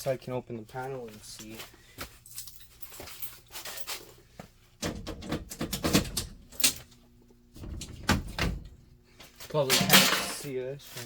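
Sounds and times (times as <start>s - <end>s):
metal cabinet clicks and knocks: 4.8s - 6.4s, 7.6s - 8.8s.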